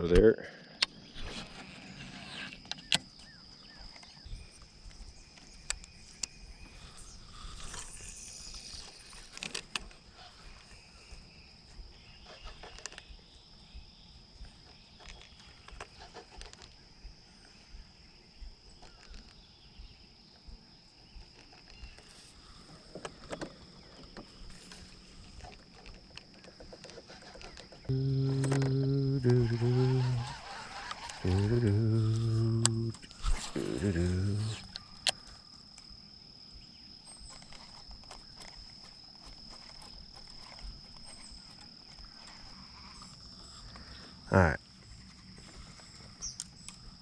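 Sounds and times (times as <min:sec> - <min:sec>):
high-pitched insect drone: 0:01.0 - 0:14.6, 0:27.0 - 0:47.0.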